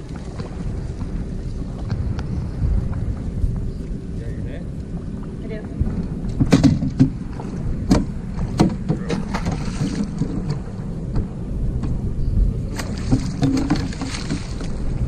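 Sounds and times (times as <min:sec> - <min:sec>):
wind rumble on microphone: 0:00.0 - 0:15.0
gear knocking against canoe: 0:05.7 - 0:12.0, 0:12.7 - 0:15.0.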